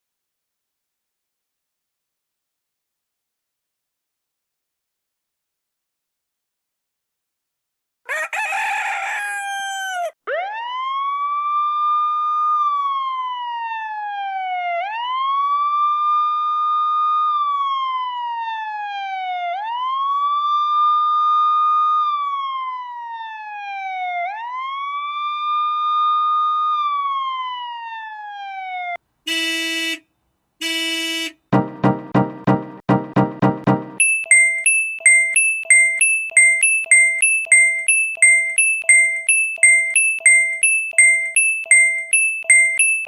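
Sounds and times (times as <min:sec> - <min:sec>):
wailing siren: 0:08.1 - 0:29.0.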